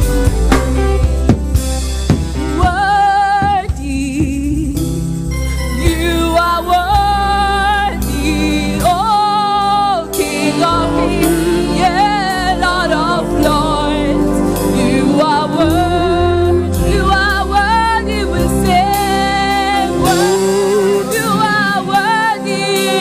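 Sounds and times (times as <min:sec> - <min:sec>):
band with bass and chords: 0:00.0 - 0:23.0
gospel choir singing: 0:05.4 - 0:23.0.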